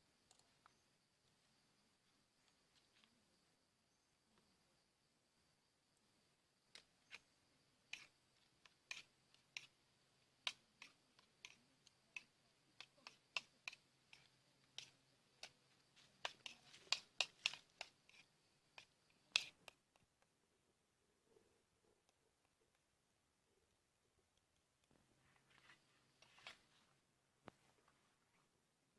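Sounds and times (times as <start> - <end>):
sharp clicks and taps: 10.4 - 20.3.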